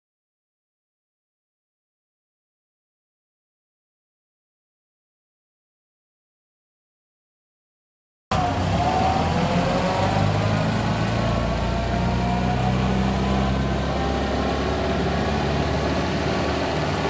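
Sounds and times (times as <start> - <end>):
car engine idling: 8.3 - 17.0.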